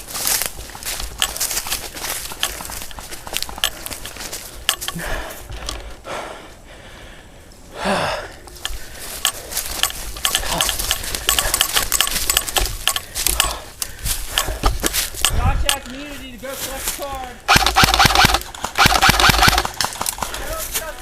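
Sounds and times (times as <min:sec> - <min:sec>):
footsteps crunching on rough ground: 0:00.0 - 0:06.4, 0:08.3 - 0:18.8, 0:19.4 - 0:21.0
loud breaths: 0:00.8 - 0:15.7, 0:19.9 - 0:21.0.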